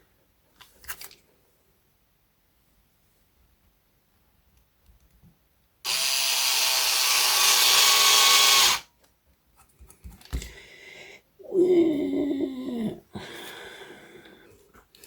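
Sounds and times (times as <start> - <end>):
power drill driving a screw: 5.9 - 8.9.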